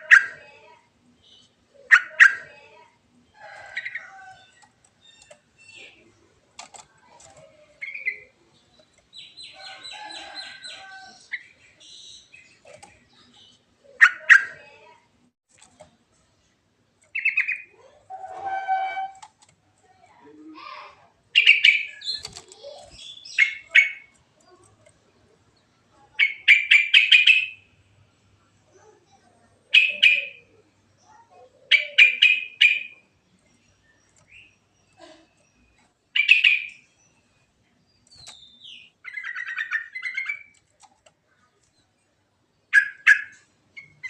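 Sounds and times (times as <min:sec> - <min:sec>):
bird singing: 0:07.0 - 0:14.6, 0:21.3 - 0:24.6, 0:26.1 - 0:27.7, 0:29.6 - 0:40.6, 0:42.6 - 0:44.0.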